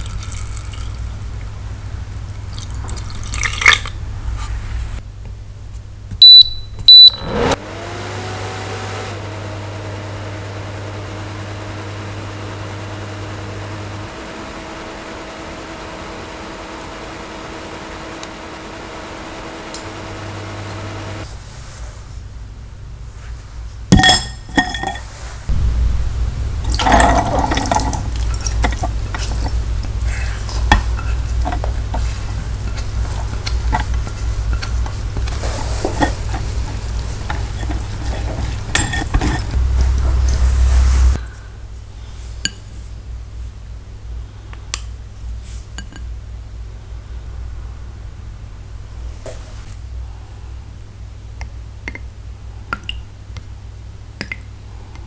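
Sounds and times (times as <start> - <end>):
appliance electronic beeps: 6.2 - 14.1
motor hum: 6.9 - 21.5, 24.0 - 41.7
utensils clinking and scraping: 24.0 - 25.3, 26.7 - 39.6.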